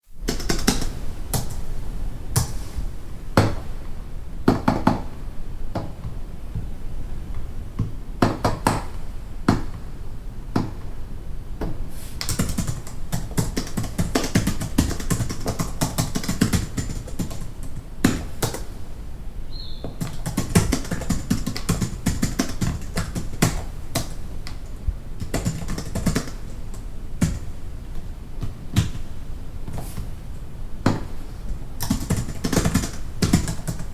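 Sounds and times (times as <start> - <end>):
fast typing on a keyboard: 0.3 - 1.6, 12.2 - 18.7, 20.0 - 27.6, 31.8 - 33.9.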